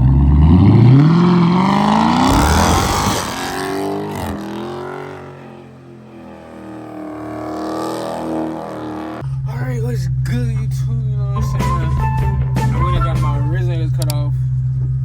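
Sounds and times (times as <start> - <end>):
car engine accelerating hard: 0.0 - 9.2.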